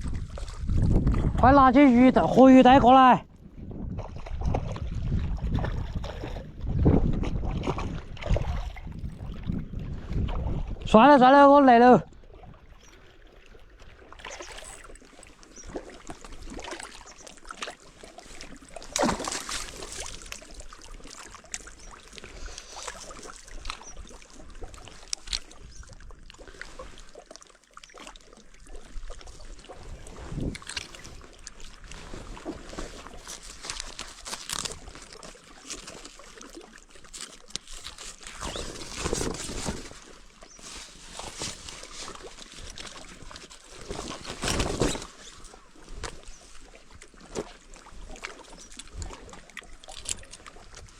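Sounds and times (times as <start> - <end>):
water sloshing and lapping: 0.0 - 50.9
splashes or knocks: 18.8 - 20.5.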